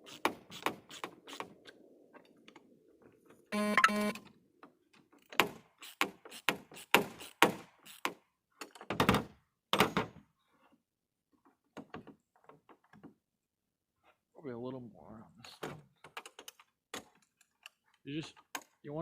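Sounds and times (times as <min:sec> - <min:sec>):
short electronic beep: 0:03.6 - 0:04.2.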